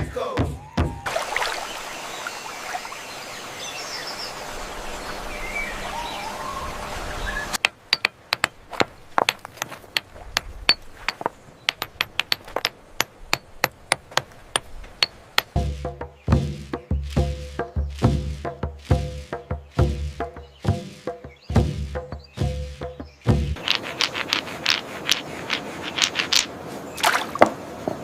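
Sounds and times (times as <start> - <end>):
sharp knocks: 7.6 - 26.5.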